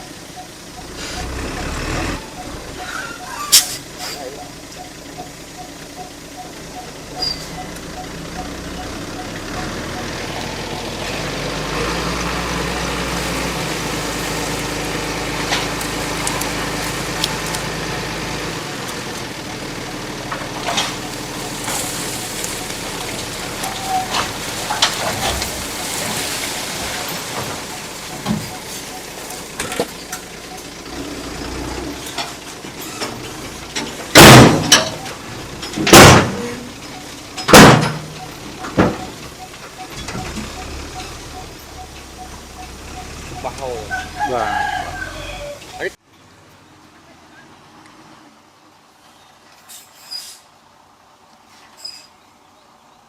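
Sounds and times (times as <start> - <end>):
heavy machine engine running: 0.0 - 45.9
loud sudden thumps: 34.1 - 35.0, 35.8 - 36.5, 37.5 - 38.1.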